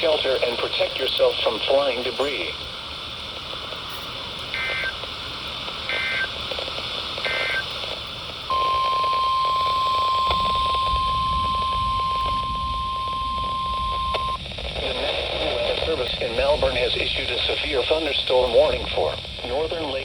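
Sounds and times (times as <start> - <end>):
warbling data bursts: 4.5 - 5.0, 5.8 - 6.4, 7.2 - 7.8, 8.4 - 20.0.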